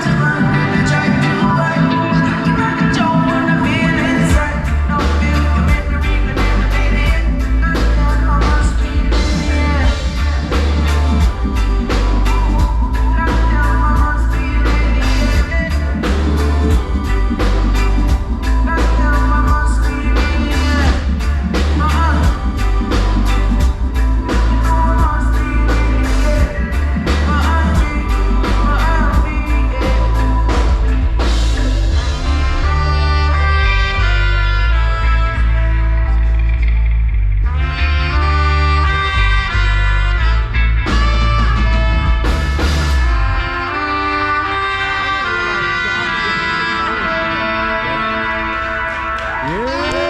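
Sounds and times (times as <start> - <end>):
person singing: 0.0 - 34.4, 45.2 - 50.0
guitar: 0.0 - 50.0
heavy bass line: 0.0 - 50.0
drum kit steady beat: 2.6 - 34.4, 40.8 - 43.9.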